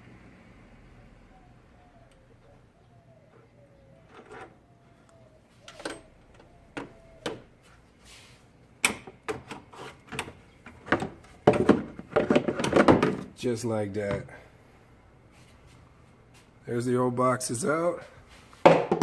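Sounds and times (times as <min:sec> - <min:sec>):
hard plastic knocks and clatters: 0:08.9 - 0:13.3.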